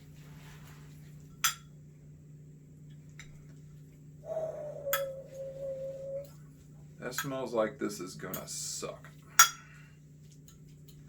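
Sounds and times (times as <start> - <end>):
steady ringing tone: 4.3 - 6.3.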